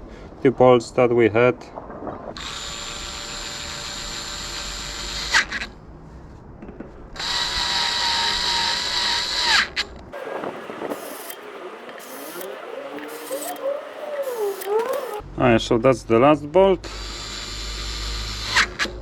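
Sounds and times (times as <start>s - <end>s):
electric drill-driver motor: 2.4s - 5.7s, 7.2s - 9.8s, 10.6s - 15.2s, 16.9s - 19.0s
drill clutch clicking: 10.9s - 15.2s.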